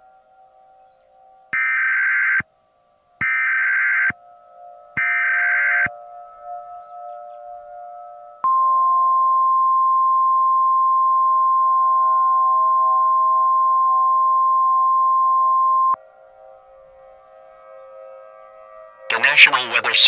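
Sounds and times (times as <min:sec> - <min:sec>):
soft background music: 0:16.0 - 0:19.1.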